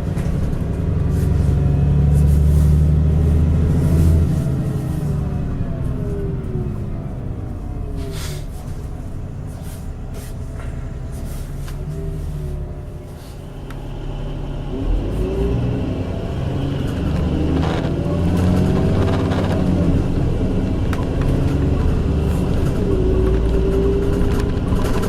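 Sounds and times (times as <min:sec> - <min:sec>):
bus engine accelerating: 0:00.0 - 0:25.0.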